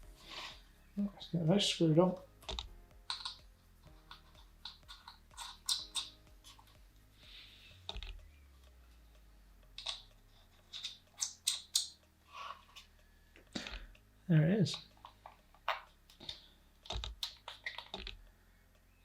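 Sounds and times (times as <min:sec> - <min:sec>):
light plastic clicks and rattles: 0:02.4 - 0:06.8, 0:14.7 - 0:18.3.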